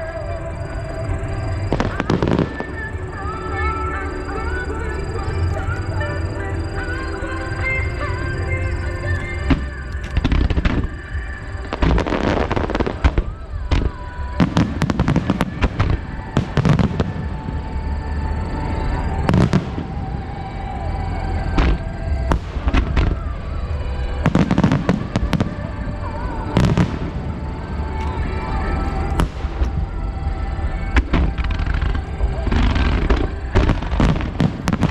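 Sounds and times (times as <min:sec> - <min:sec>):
fireworks bursting: 0:00.0 - 0:34.9
fireworks crackling: 0:00.0 - 0:34.9.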